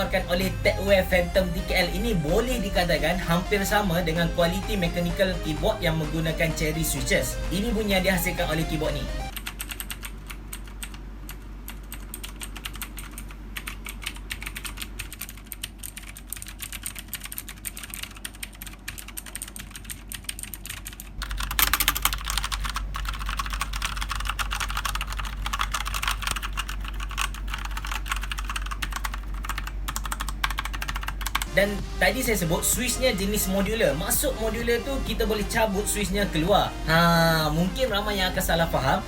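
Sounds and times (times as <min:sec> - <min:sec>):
mechanical keyboard typing: 0:04.3 - 0:31.5.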